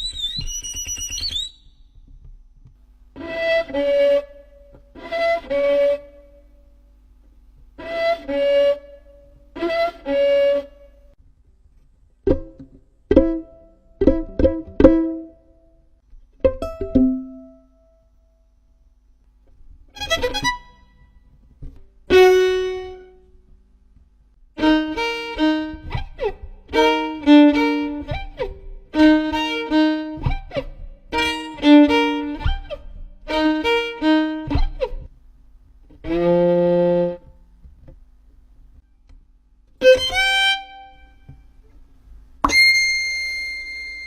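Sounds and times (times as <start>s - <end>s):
held string-instrument notes: 3.1s - 6.5s, 7.6s - 11.2s, 16.4s - 17.8s, 19.8s - 23.3s, 24.6s - 35.1s, 35.8s - 38.0s, 39.8s - 41.8s, 42.4s - 44.0s
decaying instrument notes: 16.4s - 18.0s, 42.4s - 44.0s
buzzy held tone: 42.4s - 44.0s.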